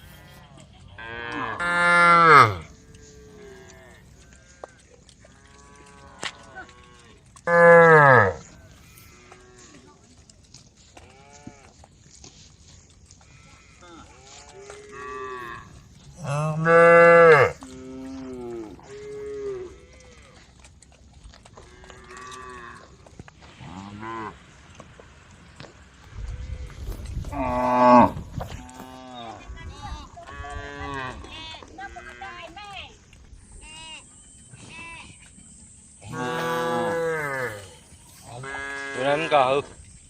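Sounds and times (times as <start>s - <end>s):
cows mooing: 0.0s - 9.8s, 13.3s - 20.6s, 21.6s - 24.5s, 26.6s - 29.5s, 30.2s - 32.4s, 36.0s - 39.7s.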